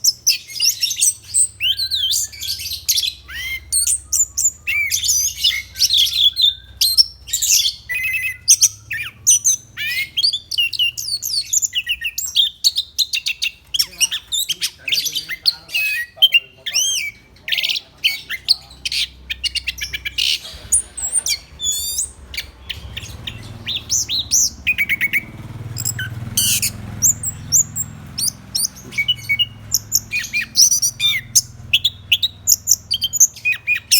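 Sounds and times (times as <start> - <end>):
thrush singing: 13.0 - 33.9.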